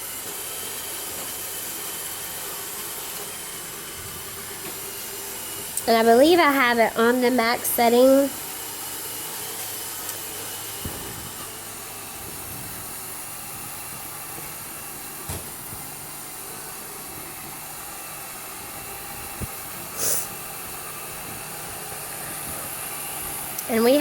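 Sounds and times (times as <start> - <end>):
robot vacuum whirring: 0.0 - 24.0
short sharp hiss: 19.9 - 20.4.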